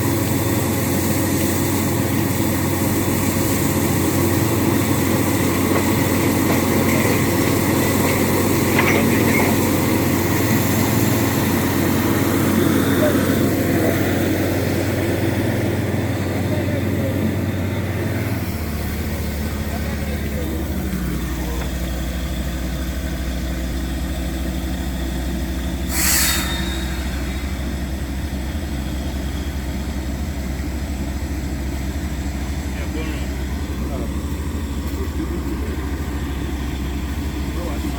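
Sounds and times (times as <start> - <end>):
drilling rig engine drone: 0.0 - 37.9
loud hiss: 24.2 - 30.4.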